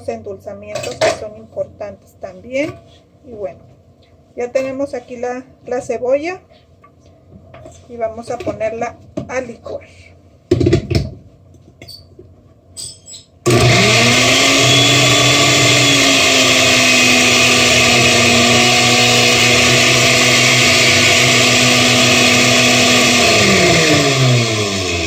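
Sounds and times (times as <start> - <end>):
blender motor running: 13.5 - 25.0.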